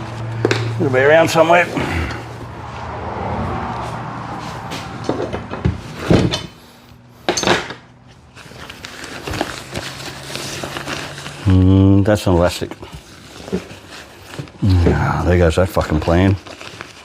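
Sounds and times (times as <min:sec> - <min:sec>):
gear being rummaged through: 0:08.1 - 0:14.6.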